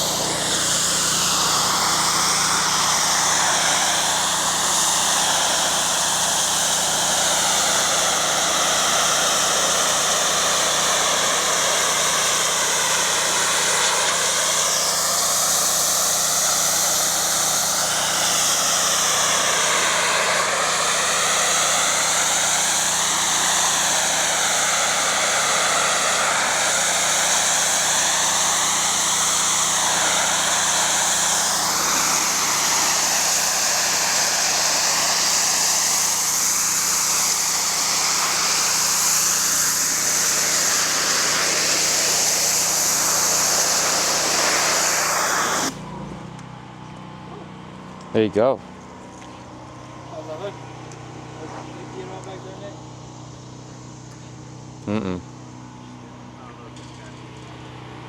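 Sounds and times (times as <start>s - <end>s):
pressure washer spray hissing: 0.0s - 46.0s, 49.3s - 57.9s
washer engine humming: 0.0s - 46.4s.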